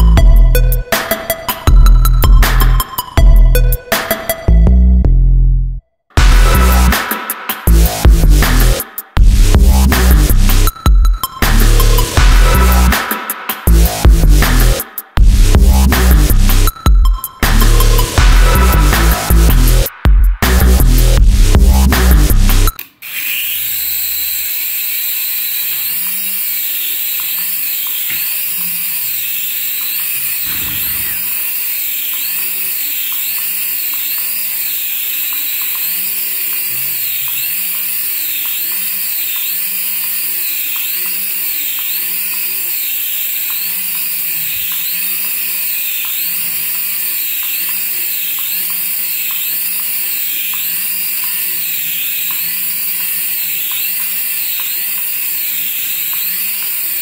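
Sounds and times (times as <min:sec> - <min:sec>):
toy high-pitched electric whine: 0:10.0 - 0:14.9, 0:16.0 - 0:19.9, 0:22.5 - 0:57.0.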